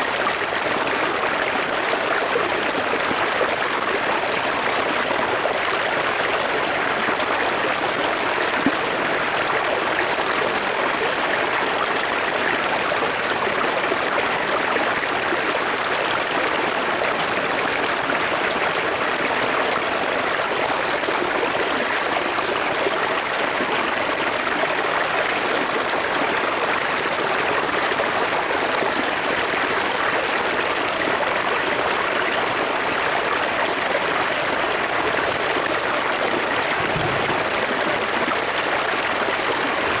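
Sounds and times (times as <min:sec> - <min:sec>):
river flowing: 0:35.6 - 0:40.0.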